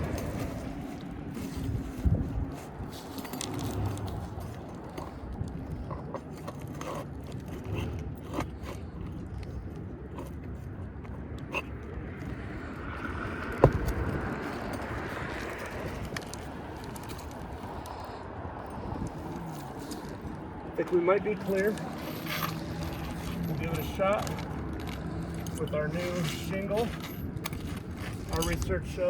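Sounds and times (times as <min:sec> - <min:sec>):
metal tool scraping shingles: 0:20.8 - 0:28.8.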